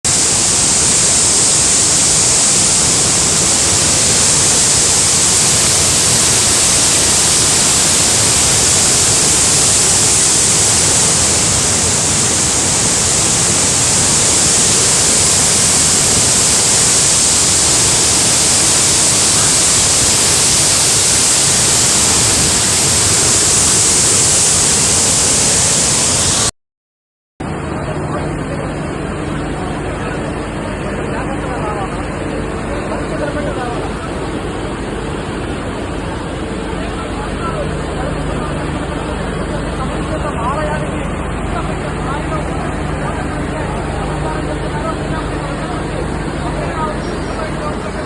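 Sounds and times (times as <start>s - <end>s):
floodwater rushing: 0.1s - 26.5s.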